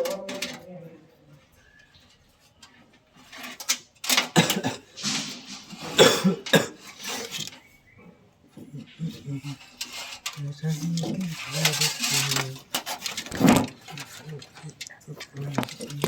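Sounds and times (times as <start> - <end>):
person coughing: 4.4 - 5.0, 5.9 - 6.8.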